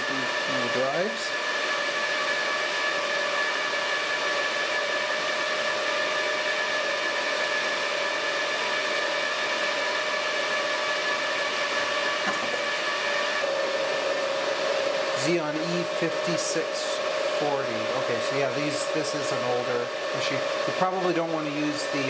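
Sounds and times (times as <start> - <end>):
fan whine: 0.0 - 22.0
server fans whooshing: 0.0 - 22.0.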